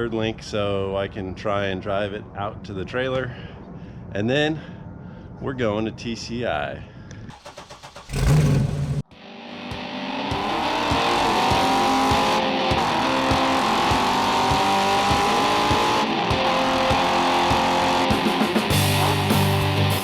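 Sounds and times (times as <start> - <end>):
car engine revving hard: 7.4 - 9.1, 10.1 - 18.2
loud low blast: 8.1 - 9.0
music: 9.1 - 20.0.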